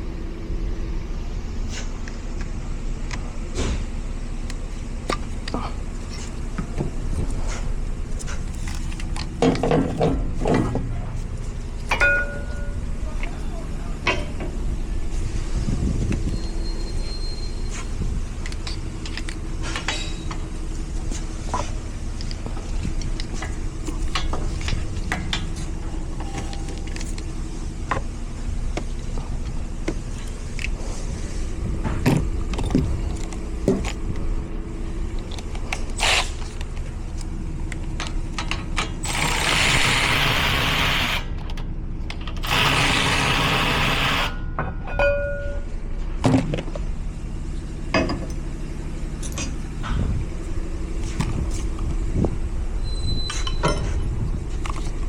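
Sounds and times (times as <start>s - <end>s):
car running: 0.0s - 42.8s.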